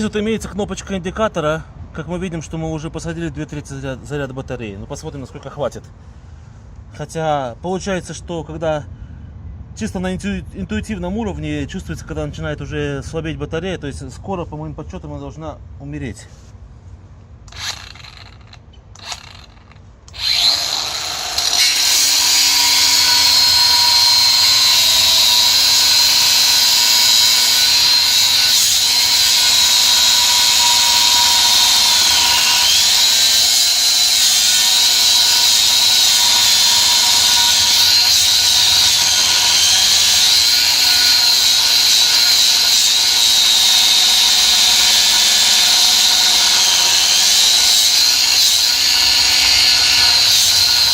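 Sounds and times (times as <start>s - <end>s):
angle grinder cutting steel: 17.5s - 50.9s.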